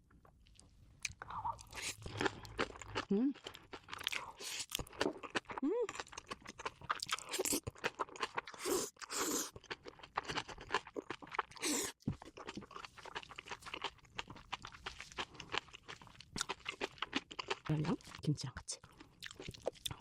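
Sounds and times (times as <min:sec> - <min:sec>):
crunchy food chewing: 0:00.2 - 0:20.0
wet mouth sounds: 0:01.0 - 0:05.8.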